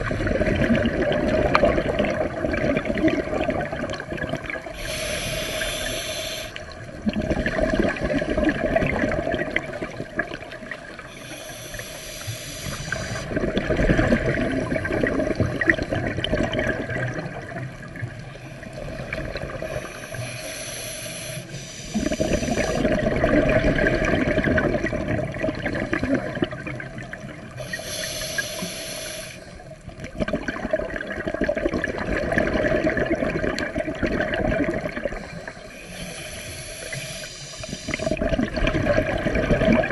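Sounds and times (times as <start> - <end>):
exhaled bubbles rushing: 0.0 - 5.2, 6.6 - 11.1, 12.9 - 20.0, 21.9 - 27.6, 29.8 - 35.4, 37.6 - 39.9
diver breathing through regulator: 4.7 - 6.8, 11.1 - 13.4, 19.6 - 23.0, 27.6 - 29.7, 35.1 - 38.3.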